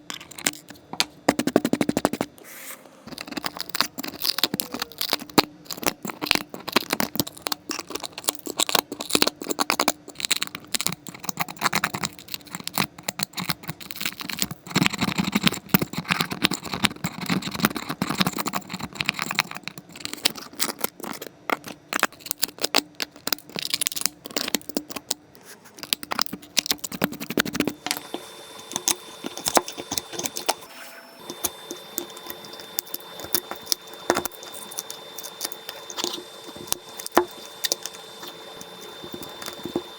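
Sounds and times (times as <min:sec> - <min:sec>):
tools clicking and scraping glass: 0:00.0 - 0:01.1, 0:03.1 - 0:25.1, 0:25.8 - 0:30.6, 0:31.2 - 0:39.9.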